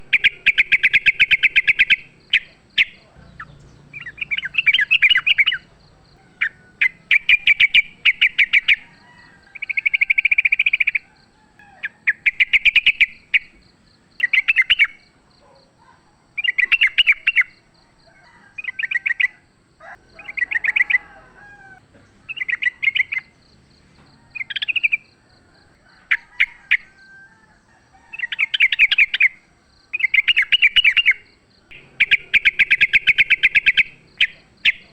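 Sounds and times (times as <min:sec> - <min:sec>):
bulbul rapid chattering song: 0:00.0 - 0:09.0, 0:09.6 - 0:11.1, 0:11.8 - 0:15.6, 0:16.4 - 0:17.6, 0:22.0 - 0:23.4, 0:24.3 - 0:25.1, 0:28.2 - 0:34.9.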